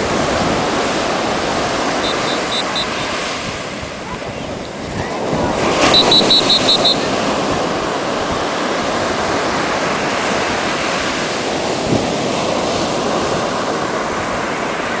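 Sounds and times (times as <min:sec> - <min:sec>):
steady rushing noise: 0:00.0 - 0:10.1.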